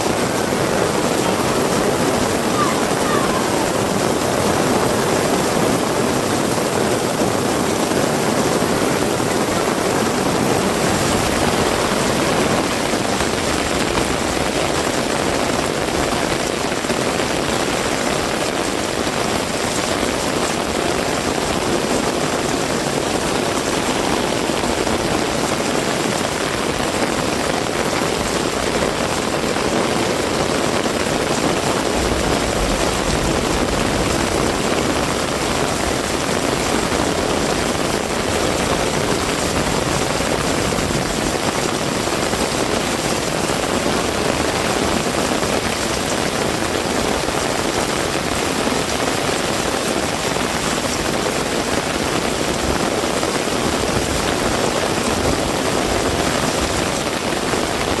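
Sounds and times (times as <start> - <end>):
heavy rain falling: 0.0 - 58.0
low rumble: 31.9 - 35.7.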